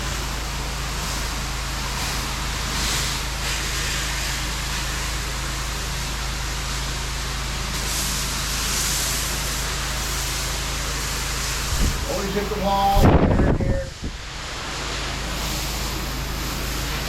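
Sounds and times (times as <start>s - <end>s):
pressure washer spray hissing: 0.0s - 13.2s, 13.9s - 17.0s
pressure washer engine hum: 0.0s - 17.0s.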